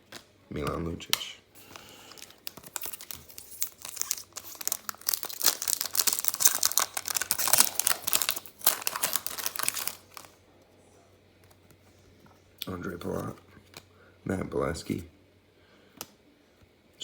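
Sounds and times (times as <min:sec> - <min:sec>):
wrapper tearing and crinkling: 0:01.7 - 0:10.4.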